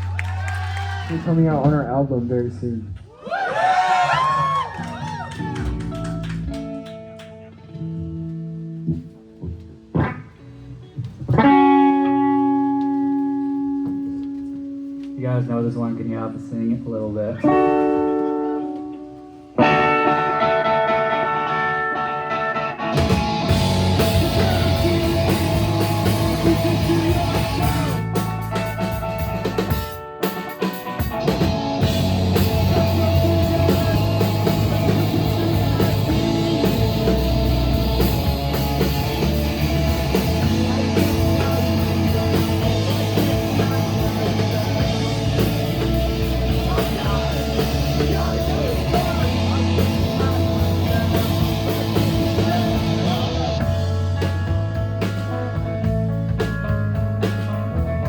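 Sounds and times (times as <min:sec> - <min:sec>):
live rock band playing: 0:05.2 - 0:15.2, 0:16.8 - 0:58.0.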